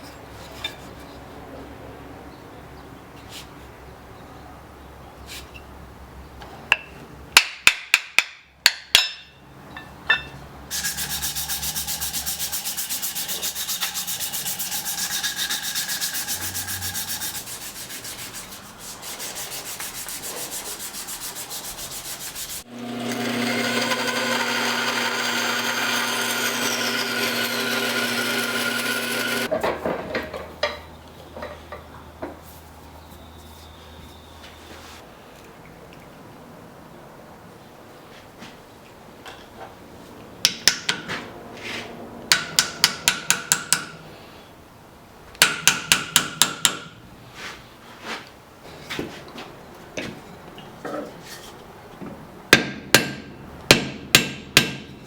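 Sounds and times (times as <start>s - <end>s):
power tool grinding: 10.7s - 17.5s, 22.2s - 29.5s.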